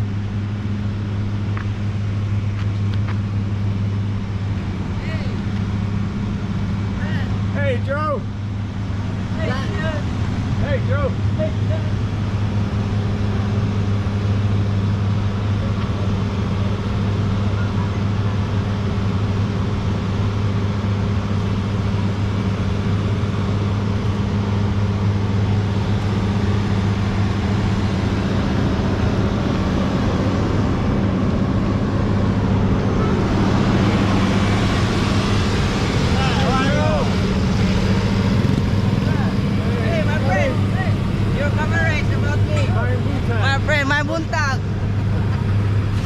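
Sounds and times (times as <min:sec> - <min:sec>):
excavator engine running: 0:00.0 - 0:46.0.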